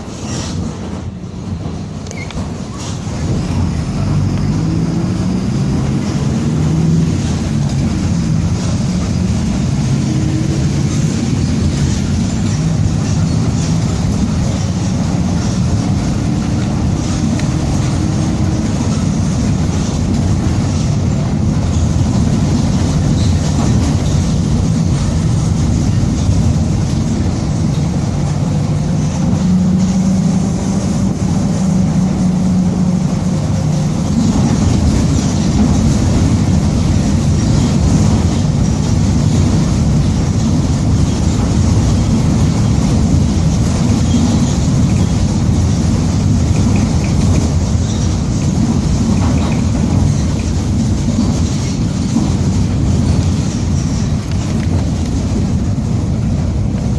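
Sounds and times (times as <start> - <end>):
bus diesel engine droning: 0.0 - 56.9.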